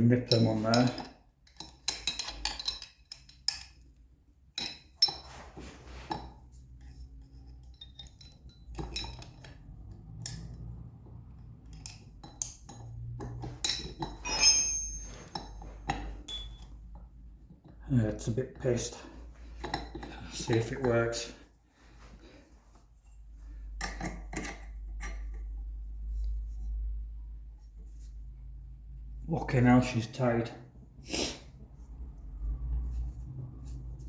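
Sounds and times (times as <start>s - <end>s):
spanner clinking on metal: 0.1s - 3.8s, 7.6s - 10.6s, 11.7s - 16.7s.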